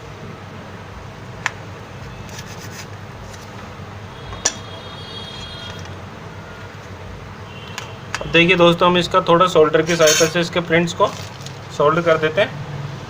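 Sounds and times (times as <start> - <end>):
small tools handled on workbench: 9.9 - 10.4.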